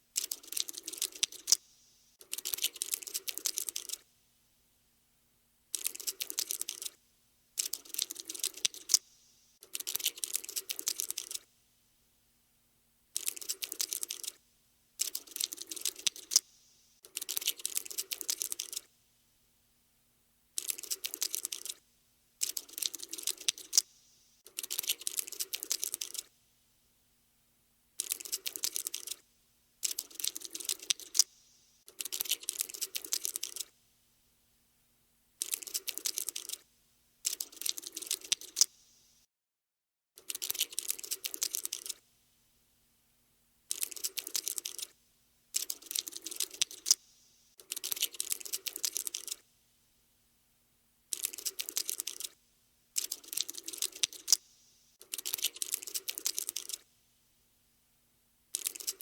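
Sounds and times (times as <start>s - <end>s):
cockroach scuttling clicks: 0.2s - 4.0s, 5.7s - 7.0s, 7.6s - 11.5s, 13.2s - 14.4s, 15.0s - 18.9s, 20.6s - 21.8s, 22.4s - 23.9s, 24.5s - 26.3s, 28.0s - 29.2s, 29.8s - 31.3s, 31.9s - 33.7s, 35.4s - 36.6s, 37.2s - 38.8s, 40.2s - 42.0s, 43.7s - 44.9s, 45.5s - 47.0s, 47.6s - 49.4s, 51.1s - 52.4s, 53.0s - 56.8s, 58.5s - 59.0s.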